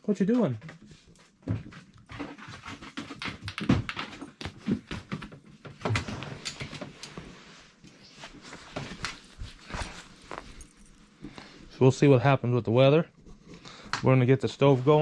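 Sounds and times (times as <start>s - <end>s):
knocks and thumps: 1.4s - 6.4s
rustling: 7.1s - 11.8s.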